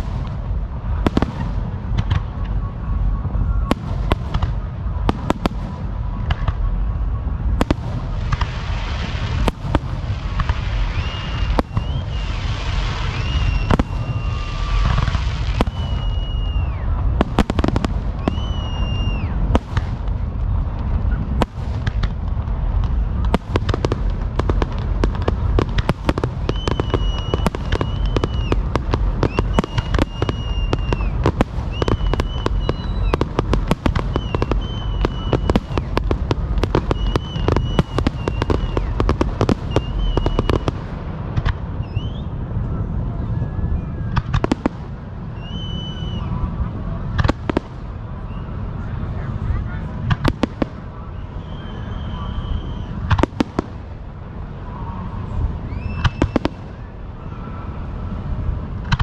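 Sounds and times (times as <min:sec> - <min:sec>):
fireworks bangs and crackles: 0:00.0 - 0:59.0
low rumble: 0:00.0 - 0:59.0
high whistles: 0:10.4 - 0:19.8, 0:25.6 - 0:40.8, 0:41.8 - 0:44.5, 0:45.2 - 0:46.5, 0:51.0 - 0:53.2, 0:54.7 - 0:58.2.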